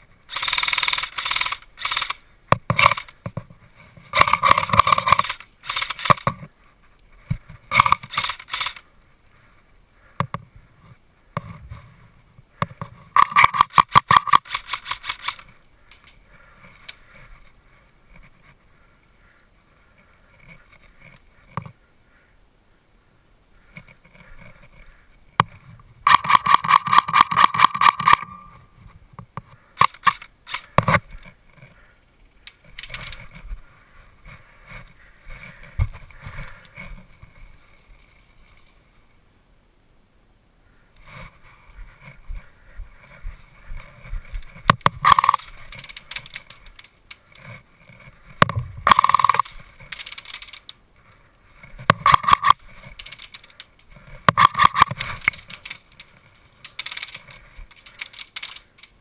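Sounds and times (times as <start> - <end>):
airsoft rifle firing bursts: 0.3 - 2.2
airsoft rifle clicks: 0.3 - 3.4, 4.1 - 6.5, 7.7 - 8.9, 12.6 - 16.2, 25.4 - 28.4, 29.4 - 31.3, 32.2 - 33.3, 44.3 - 47.5, 48.4 - 50.8, 51.9 - 59.0.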